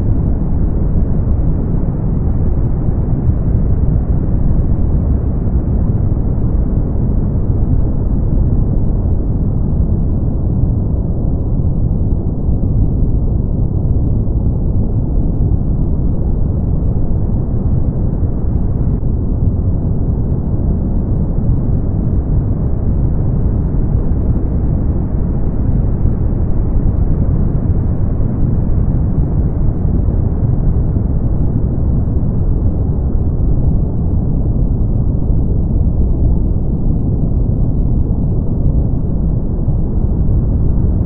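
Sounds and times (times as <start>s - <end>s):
deep rushing brown noise: 0.0s - 41.0s.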